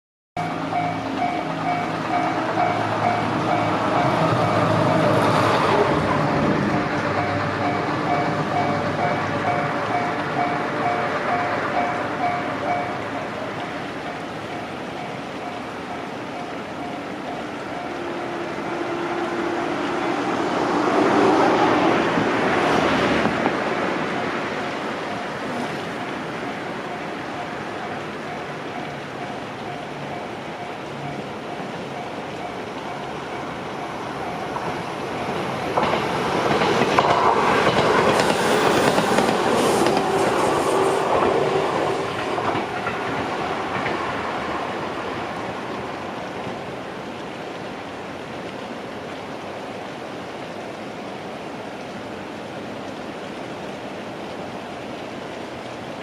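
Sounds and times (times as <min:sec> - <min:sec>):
level-crossing warning bell ringing: 0:00.4 - 0:05.0, 0:07.0 - 0:18.4, 0:24.7 - 0:36.1
train rumbling over crossing: 0:00.4 - 0:55.9.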